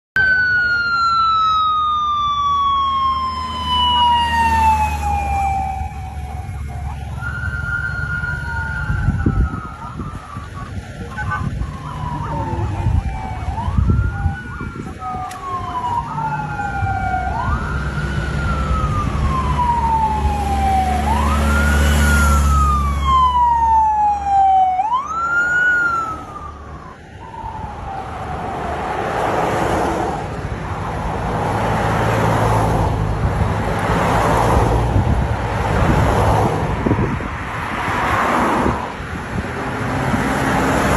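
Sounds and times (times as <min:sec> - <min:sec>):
police siren wailing: 0:00.2 - 0:30.5
passing vehicles: 0:00.2 - 0:40.9.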